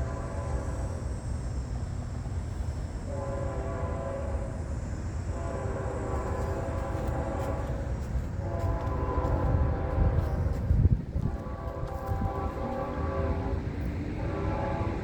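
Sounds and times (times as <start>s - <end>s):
locomotive air horn: 0.0s - 1.1s, 3.1s - 15.0s
steady low rumble: 6.1s - 15.0s.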